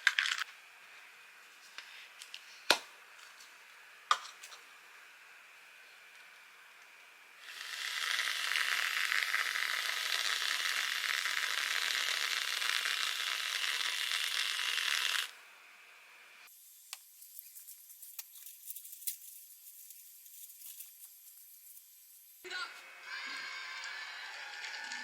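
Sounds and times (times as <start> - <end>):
steady rushing hiss: 16.5 - 22.5.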